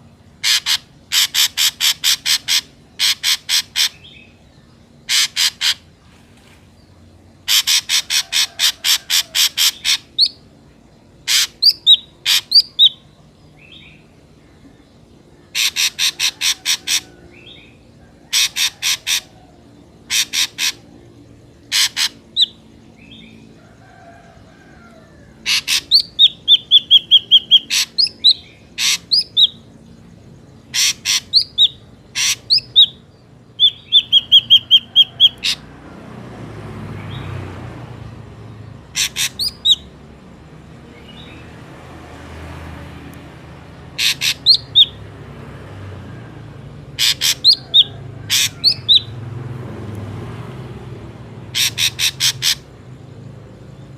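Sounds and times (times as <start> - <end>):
bird harsh clipped calls: 0.4 - 4.3, 5.1 - 5.9, 7.5 - 10.4, 11.2 - 13.0, 15.5 - 17.2, 18.3 - 19.4, 20.0 - 20.9, 21.6 - 23.2, 25.4 - 29.6, 30.7 - 33.0, 33.6 - 35.6, 38.9 - 39.9, 44.0 - 45.0, 47.0 - 49.1, 51.5 - 52.7
bird whistled notes: 33.6 - 35.5.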